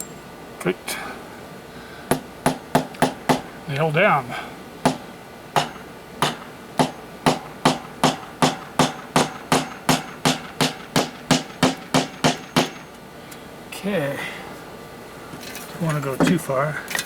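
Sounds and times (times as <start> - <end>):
hammer driving nail into wood: 2.1 - 3.5, 4.9 - 13.0.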